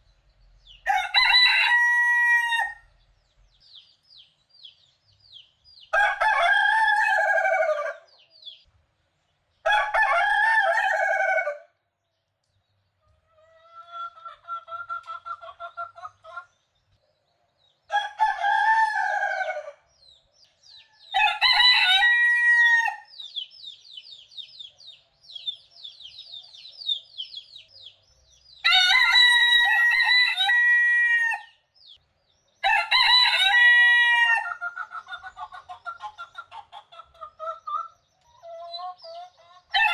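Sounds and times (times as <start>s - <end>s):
roosters crowing: 0.6s - 3.0s, 5.9s - 8.2s, 9.6s - 11.7s, 17.9s - 20.0s, 20.6s - 23.1s, 28.6s - 31.6s, 32.6s - 36.5s, 39.7s - 39.9s.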